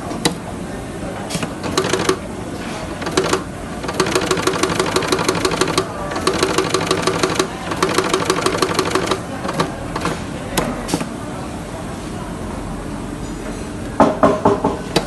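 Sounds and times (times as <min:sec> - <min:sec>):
sewing machine ticking: 0:01.6 - 0:02.2, 0:03.0 - 0:10.1.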